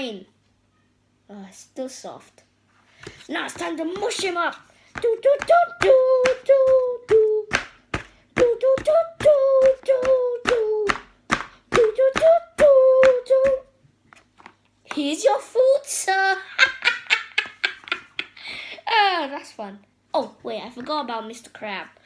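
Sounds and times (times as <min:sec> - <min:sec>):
child singing wordless tune: 0:03.3 - 0:07.6, 0:08.4 - 0:13.7, 0:15.0 - 0:16.4.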